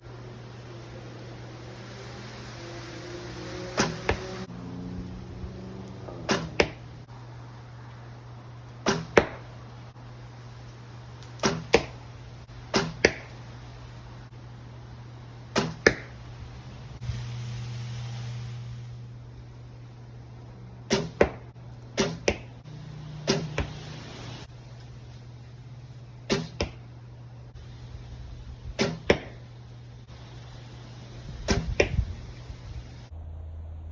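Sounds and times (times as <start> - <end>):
arrow striking target: 3.6 - 4.5, 6.1 - 6.9, 8.8 - 9.5, 11.4 - 12.0, 12.7 - 13.3, 15.5 - 16.2, 20.9 - 21.4, 22.0 - 22.5, 23.2 - 23.9, 26.3 - 26.8, 28.8 - 29.4, 31.4 - 32.1
steady low hum: 3.8 - 33.9
bow string snapping: 11.2 - 12.0, 31.5 - 32.1.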